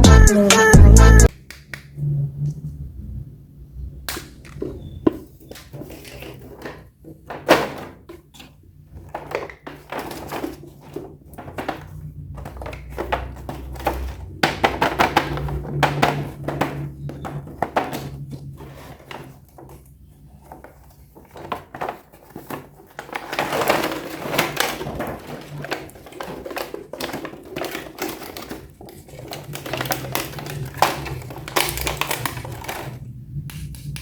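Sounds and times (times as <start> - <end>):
plastic toy parts clattering: 4.0 - 34.0
steady low hum: 30.4 - 34.0.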